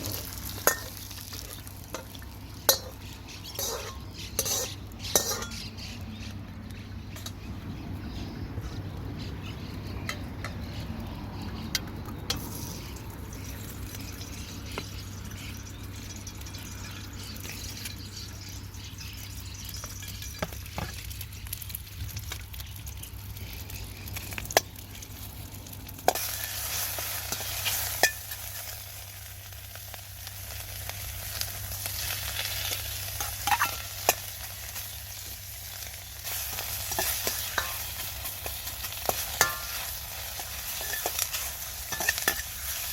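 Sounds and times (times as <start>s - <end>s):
utensil clinking against wok: 0.0s - 5.7s, 10.0s - 10.8s, 26.1s - 28.8s, 33.1s - 35.3s, 36.2s - 42.9s
food sizzling in a wok: 0.0s - 5.9s, 12.3s - 17.8s, 18.4s - 42.9s.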